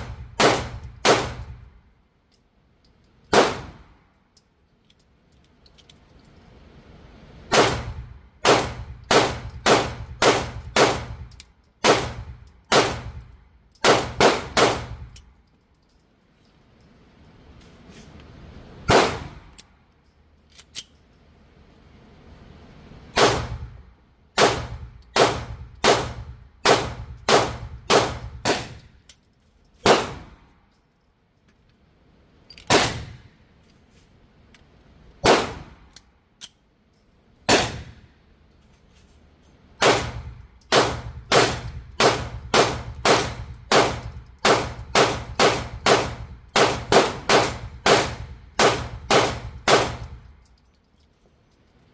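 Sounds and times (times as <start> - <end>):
pistol shots: 0.0 - 1.5, 3.3 - 3.9, 7.5 - 13.2, 13.8 - 15.0, 18.9 - 19.5, 23.2 - 23.7, 24.4 - 28.8, 29.8 - 30.4, 32.7 - 33.3, 35.2 - 35.9, 37.5 - 38.0, 39.8 - 50.1.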